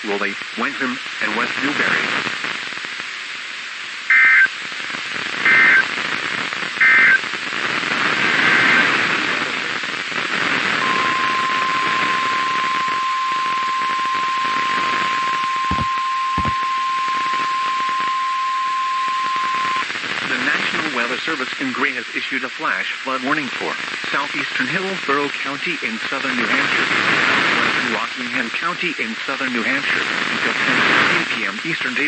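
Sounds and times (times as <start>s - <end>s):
static hiss: 0.0s - 32.0s
two-tone data bursts: 4.1s - 4.5s, 5.4s - 5.9s, 6.8s - 7.3s, 8.1s - 9.0s, 10.7s - 19.9s
steady warning alarm tone: 10.8s - 19.8s.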